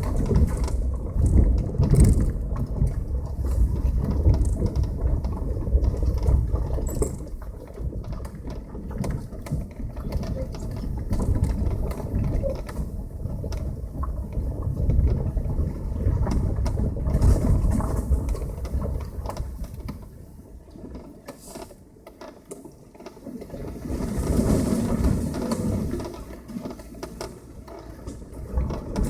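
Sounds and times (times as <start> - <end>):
knocks and rattles: 0.0 - 3.0, 3.7 - 12.0
car tyres rumbling: 0.0 - 19.8.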